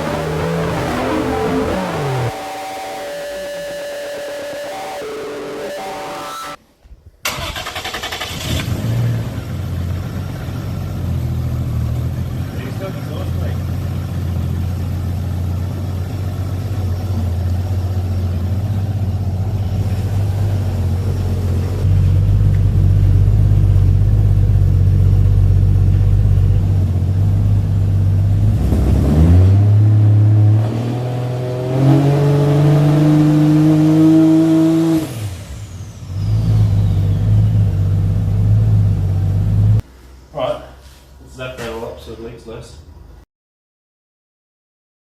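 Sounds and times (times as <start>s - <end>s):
car engine idling and revving: 0.0s - 2.8s, 7.8s - 39.9s
turbo whistle: 0.8s - 6.6s.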